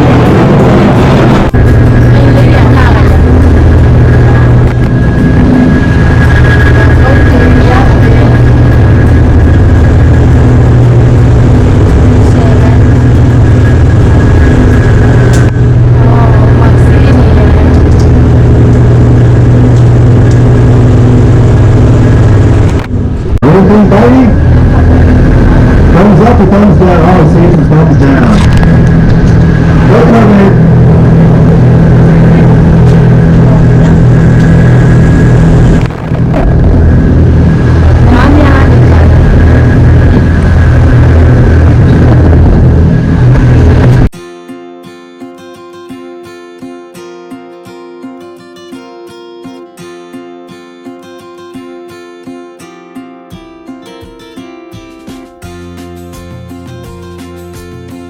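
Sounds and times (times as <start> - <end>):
boat engine droning: 0.0 - 44.1.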